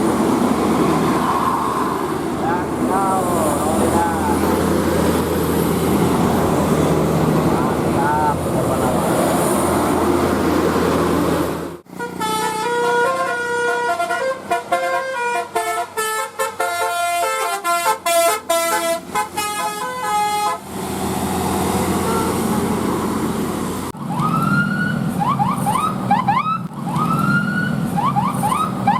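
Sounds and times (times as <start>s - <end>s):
engine and street noise: 0.0s - 28.9s
rising siren-like whoops: 1.0s - 2.2s
musical bus horn melody: 11.8s - 20.7s, 21.9s - 22.7s.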